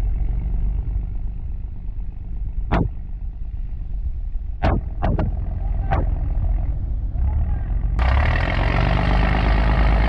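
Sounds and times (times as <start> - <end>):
boat engine rumbling: 0.0 - 10.0
sharp knocks: 2.7 - 2.9, 4.6 - 6.2.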